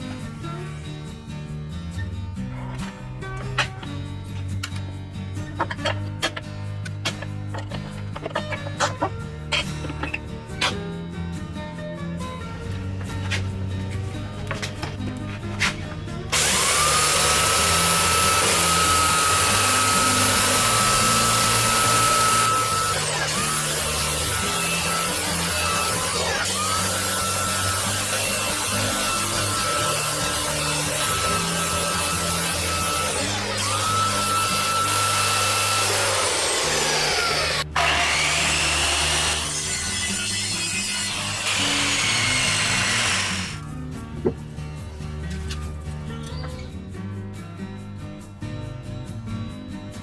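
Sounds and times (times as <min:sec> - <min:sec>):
power tool motor whine: 0:16.3 - 0:43.6.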